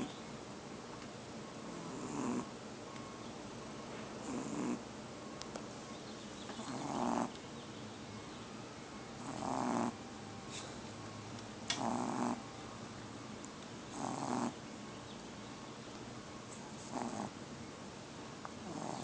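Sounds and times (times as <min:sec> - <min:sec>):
baby snoring: 0:09.2 - 0:10.0.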